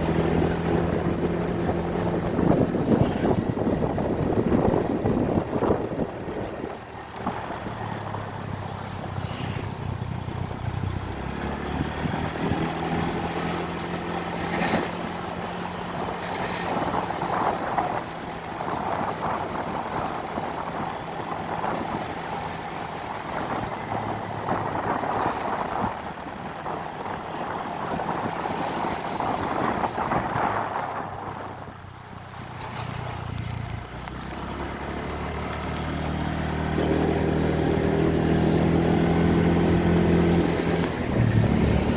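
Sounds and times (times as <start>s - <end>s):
small petrol engine running: 0.0s - 17.2s.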